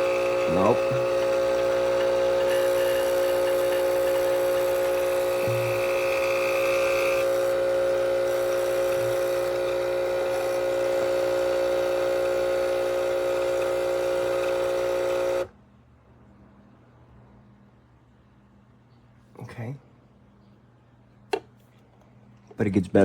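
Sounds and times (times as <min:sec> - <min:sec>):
espresso machine pump humming: 0:00.0 - 0:15.5.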